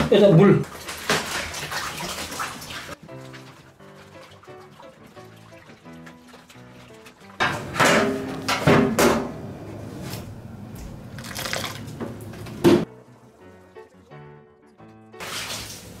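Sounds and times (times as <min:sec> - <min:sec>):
water spraying onto metal parts: 0:15.2 - 0:16.0.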